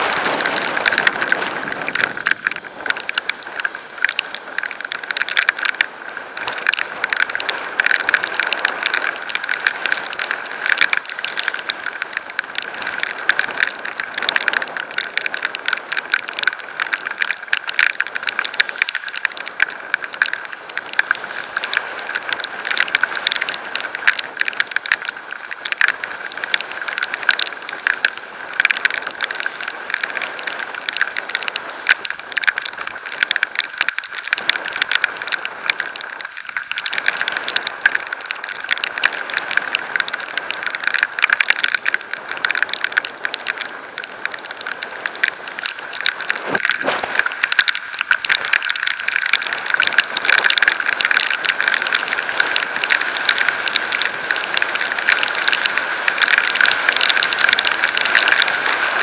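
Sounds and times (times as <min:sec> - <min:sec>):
heavy rain pelting camera: 0:00.0 - 0:59.0
rushing air: 0:46.2 - 0:47.6.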